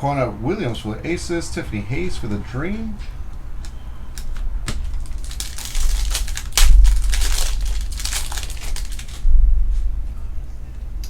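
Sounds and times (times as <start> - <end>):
plastic wrapper crinkling and tearing: 3.6 - 9.9.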